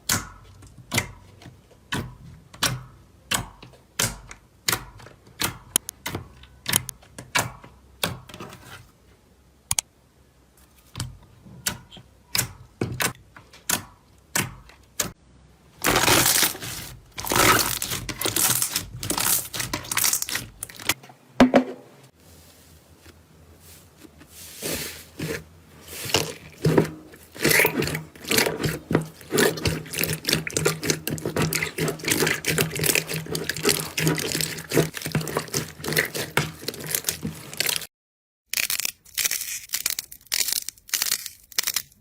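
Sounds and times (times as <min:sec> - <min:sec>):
slime crackling: 0:15.8 - 0:21.0, 0:24.6 - 0:37.9, 0:38.6 - 0:42.0.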